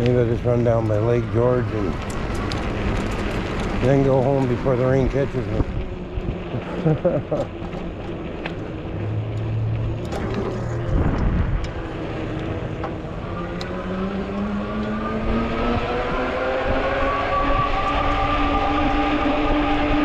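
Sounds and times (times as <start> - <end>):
tyres rumbling: 0.0 - 5.9, 11.8 - 15.6
wind noise: 0.0 - 20.0
electric motor whining: 7.8 - 18.2.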